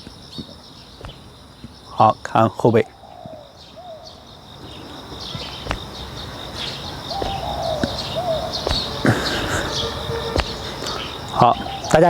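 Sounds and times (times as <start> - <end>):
small birds chirping: 0.0 - 12.0
low arching bird call: 1.9 - 12.0
sharp thud: 5.4 - 11.0.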